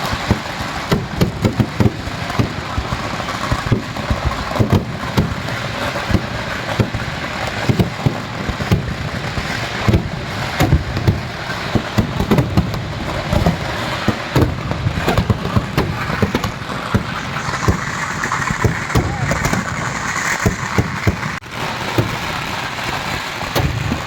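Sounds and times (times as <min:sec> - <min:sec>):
fireworks bangs: 0:00.0 - 0:24.0
fireworks crackle: 0:00.0 - 0:24.0.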